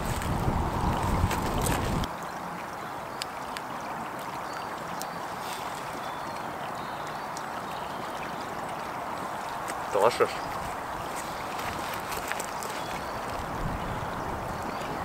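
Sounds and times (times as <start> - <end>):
campfire crackling: 0.0 - 2.1
wind buffeting microphone: 0.0 - 2.1, 12.8 - 15.0
stream flowing: 0.0 - 15.0.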